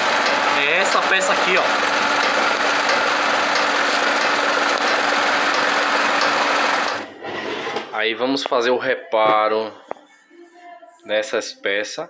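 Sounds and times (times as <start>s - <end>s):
machine running with fast ticking: 0.0s - 7.1s.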